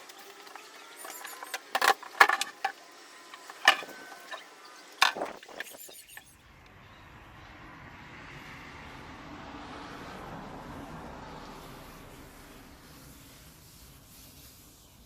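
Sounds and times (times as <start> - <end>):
sharp clicks and clinks: 1.0 - 6.3.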